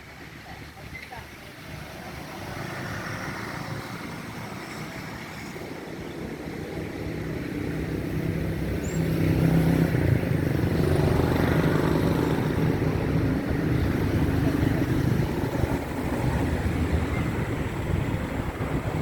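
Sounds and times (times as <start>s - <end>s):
engine running: 5.1s - 19.0s.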